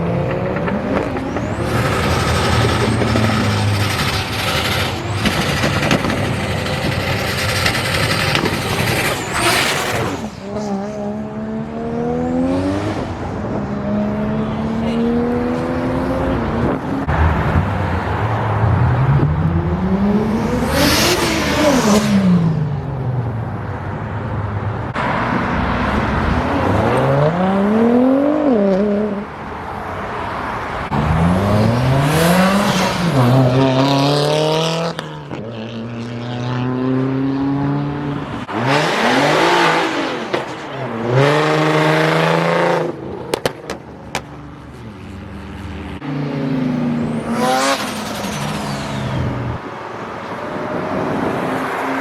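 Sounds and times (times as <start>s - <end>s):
car engines accelerating: 0.0s - 52.0s.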